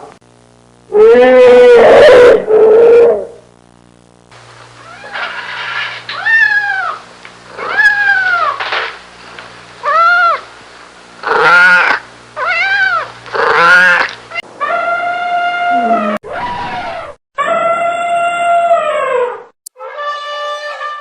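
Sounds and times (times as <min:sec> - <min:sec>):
mammoth calls wailing: 0:00.9 - 0:03.4, 0:06.1 - 0:08.6, 0:09.8 - 0:10.4, 0:11.2 - 0:17.8.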